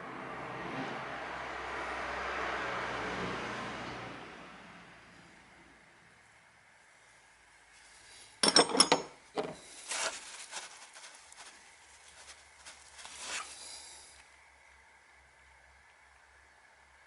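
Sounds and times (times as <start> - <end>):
light clinks and scraping: 8.3 - 11.5
metal objects clanking: 8.4 - 9.6.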